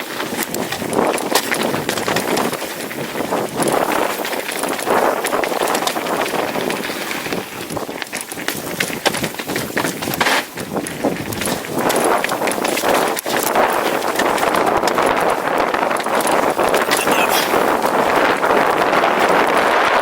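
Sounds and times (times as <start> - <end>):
bike tyres on dirt trail: 0.0 - 20.0
wind buffeting microphone: 0.2 - 20.0.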